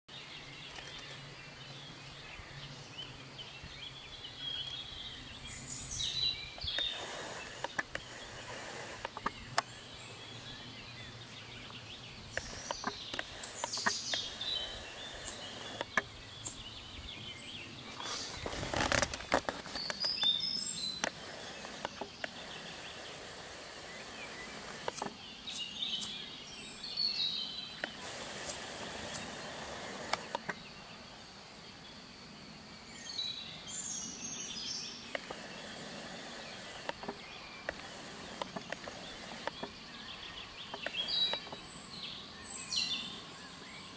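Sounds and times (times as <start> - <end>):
rustle: 0.1 - 43.9
songbirds warbling: 0.1 - 43.9
scattered clicks: 0.7 - 1.2, 6.6 - 9.7, 11.7 - 16.6, 21.0 - 22.6, 24.3 - 26.2, 27.8 - 30.6, 35.1 - 35.9, 36.5 - 39.8.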